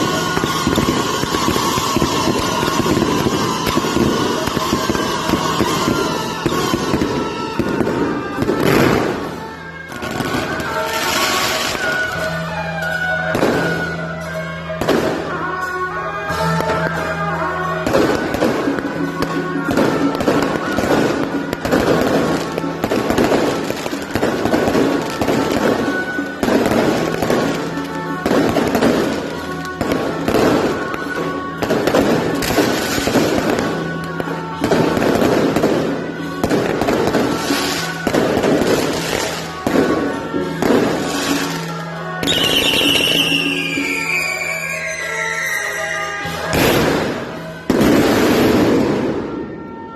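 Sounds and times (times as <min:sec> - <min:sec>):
fireworks crackling bangs: 0:00.0 - 0:49.9
music playing: 0:00.0 - 0:49.9.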